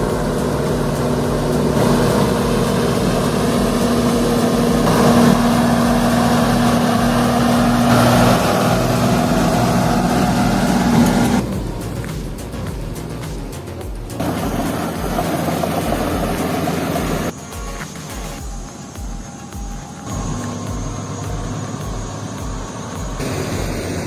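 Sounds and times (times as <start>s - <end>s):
truck engine under heavy load: 0.0s - 17.3s.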